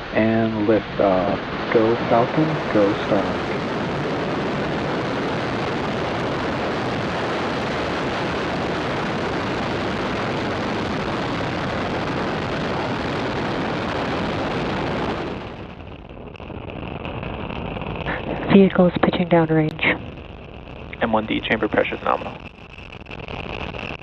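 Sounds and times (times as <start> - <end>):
quiet hiss: 0.0 - 3.7, 21.0 - 22.4
rocket engines roaring: 0.0 - 22.5.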